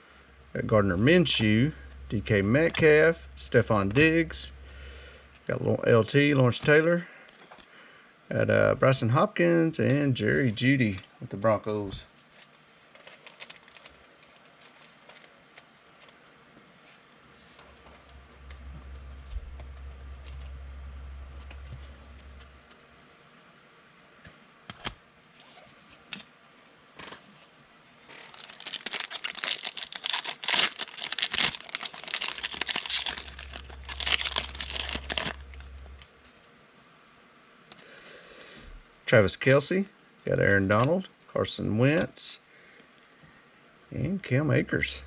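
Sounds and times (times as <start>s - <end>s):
low hum: 0.0s - 7.3s, 16.8s - 23.3s, 28.3s - 36.5s
wrapper tearing and crinkling: 13.0s - 16.3s, 28.2s - 36.2s.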